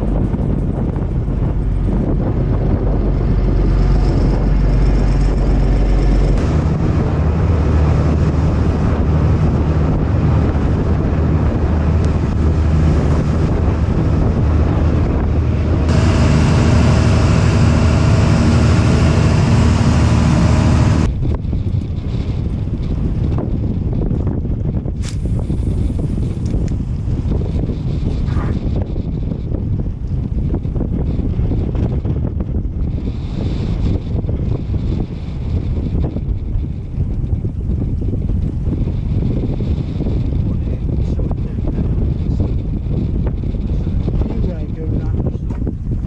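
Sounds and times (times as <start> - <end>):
boat engine running: 0.0 - 21.5
wind buffeting microphone: 0.0 - 46.0.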